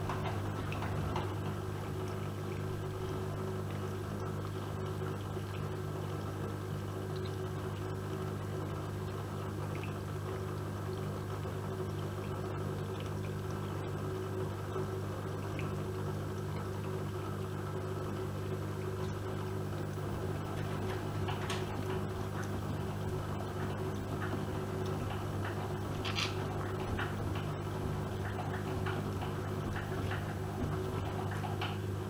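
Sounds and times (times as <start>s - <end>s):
water sloshing inside machine: 0.0s - 5.7s, 17.8s - 32.0s
washing machine hum: 0.0s - 32.0s.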